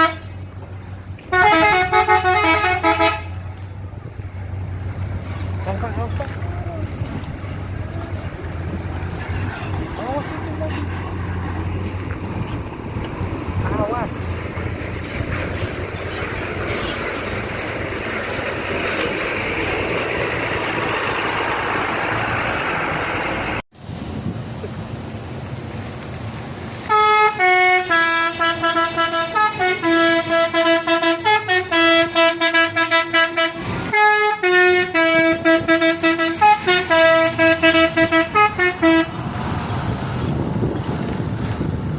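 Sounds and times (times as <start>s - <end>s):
bus multi-tone horn melody: 0.0s - 0.4s, 1.2s - 3.5s, 26.9s - 39.3s
traffic and engine noise: 0.0s - 41.9s.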